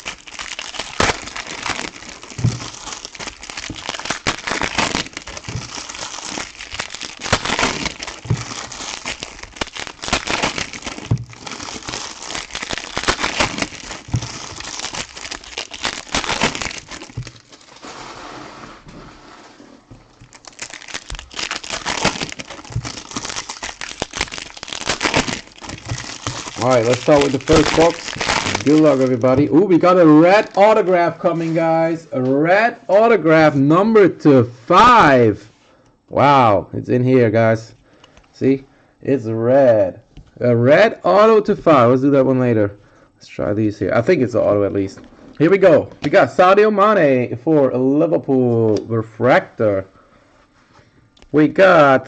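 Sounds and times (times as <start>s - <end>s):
plastic wrapping crinkling and tearing: 0.0s - 17.9s, 20.1s - 31.8s.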